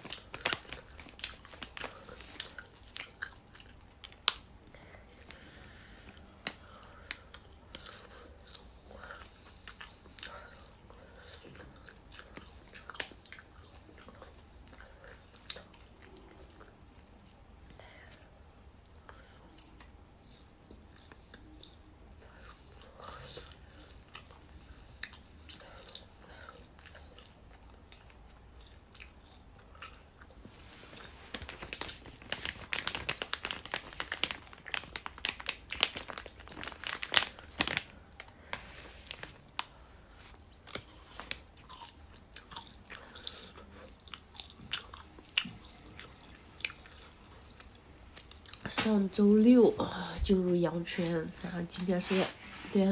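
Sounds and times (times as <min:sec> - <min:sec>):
person chewing crunchy food: 0:07.2 - 0:16.7, 0:18.9 - 0:38.5, 0:39.1 - 0:48.6.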